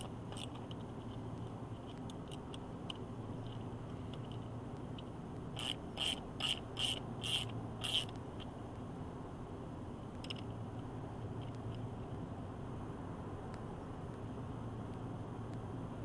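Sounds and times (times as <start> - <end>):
metal ratchet clicks: 0.0 - 0.8, 5.6 - 8.1, 10.2 - 10.5
steady low hum: 0.0 - 16.0.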